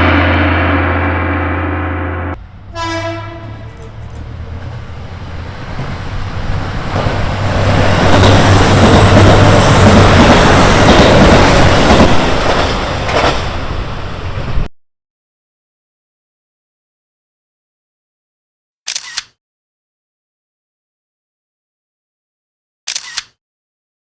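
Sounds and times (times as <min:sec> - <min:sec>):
train rushing past: 0:00.0 - 0:14.7.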